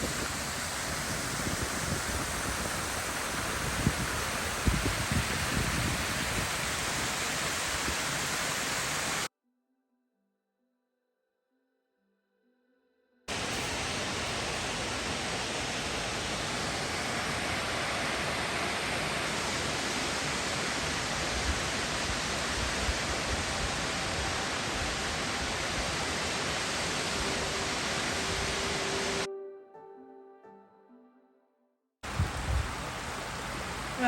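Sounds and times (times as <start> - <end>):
creek water rushing: 0.0 - 9.3, 13.3 - 29.3, 32.0 - 34.0.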